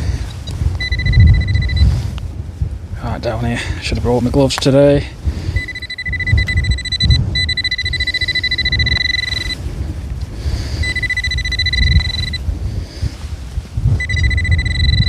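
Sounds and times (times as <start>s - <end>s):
wind buffeting microphone: 0.0s - 15.0s
metal detector high tone: 0.8s - 2.0s, 5.6s - 9.6s, 10.8s - 12.4s, 13.9s - 15.0s.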